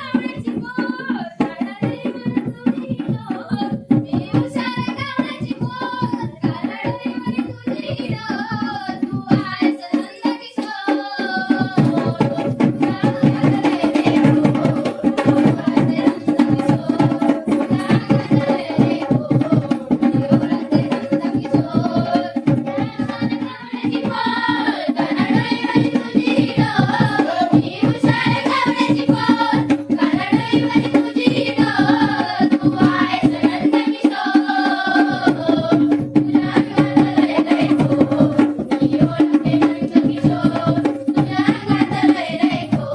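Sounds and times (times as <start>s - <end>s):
folk singing: 0.0s - 42.9s
hand drum rhythm: 0.0s - 42.9s.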